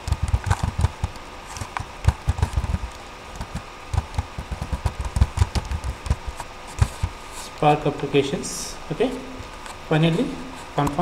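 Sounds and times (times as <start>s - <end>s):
computer keyboard typing: 0.0s - 7.0s.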